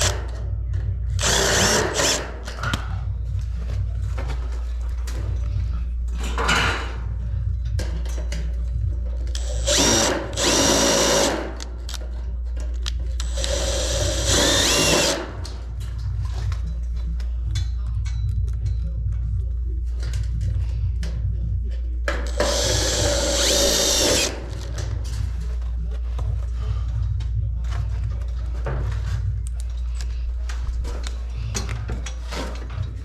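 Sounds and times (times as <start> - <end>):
power screw gun driving screws: 1.2 - 2.3, 9.4 - 11.6, 13.2 - 15.4, 22.3 - 24.6.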